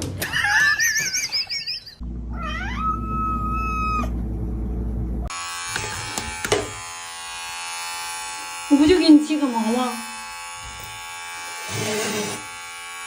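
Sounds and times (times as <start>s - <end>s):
cat meowing: 2.3s - 4.2s
steady electric buzz: 5.3s - 13.0s.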